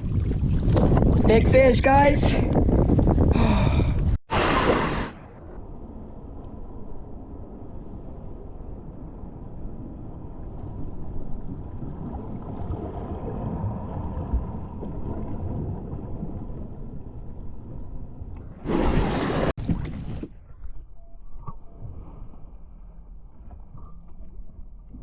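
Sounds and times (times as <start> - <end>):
water moving around kayak: 0.0 - 1.6, 4.0 - 20.8
wind rumbling on microphone: 0.0 - 25.0.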